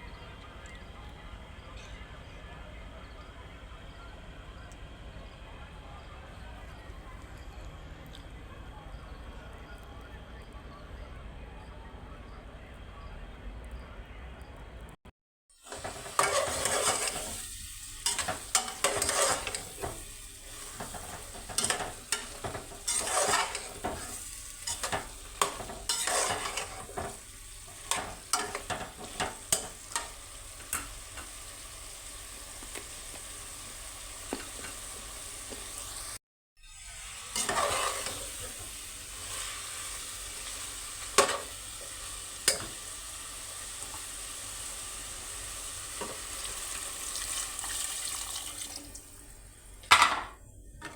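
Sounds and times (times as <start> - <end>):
vegetables sizzling in oil: 15.5 - 49.8
spatula scraping and knocking pan: 15.7 - 31.3, 34.3 - 35.7, 37.3 - 39.5.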